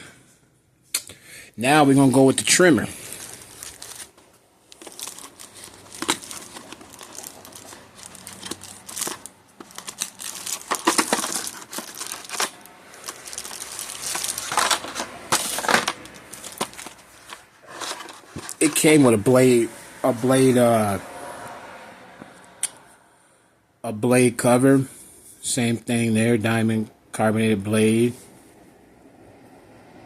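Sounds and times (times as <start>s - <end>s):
plastic packaging crinkling: 2.8s - 19.2s.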